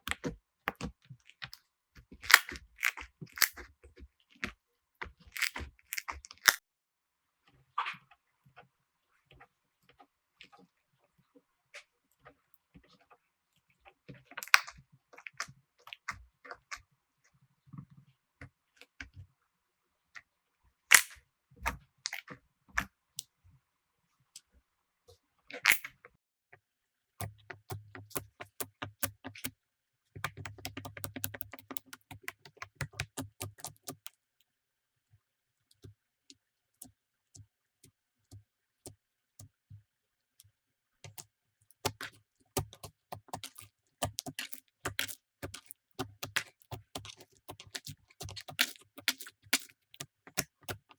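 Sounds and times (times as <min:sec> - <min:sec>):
slime sticky clicks and pops: 0:02.2 - 0:03.6, 0:20.9 - 0:21.2, 0:41.9 - 0:50.8.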